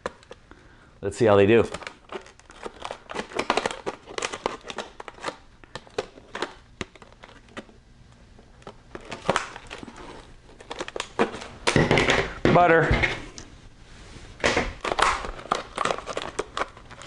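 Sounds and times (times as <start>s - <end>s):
scissors snipping plastic packaging: 1.6s - 7.7s, 8.6s - 11.5s, 14.8s - 17.0s.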